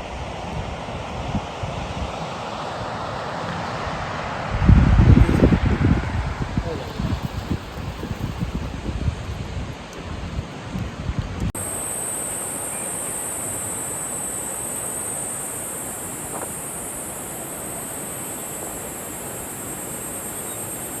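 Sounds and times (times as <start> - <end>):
wind buffeting microphone: 3.8 - 11.5
outdoor hiss: 11.5 - 21.0
high even buzz: 11.6 - 21.0.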